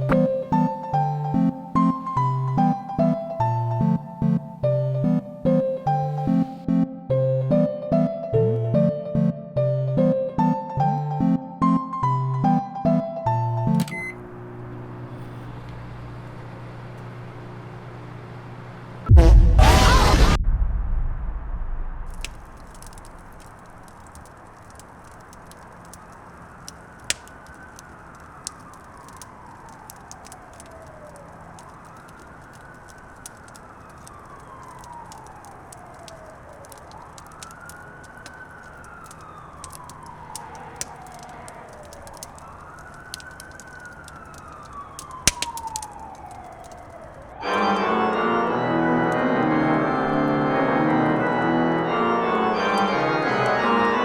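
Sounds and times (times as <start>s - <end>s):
faint wailing siren tone: 0.0s - 8.0s, 22.0s - 54.0s
scattered clicks: 22.1s - 47.4s
loud organ music: 47.4s - 54.0s.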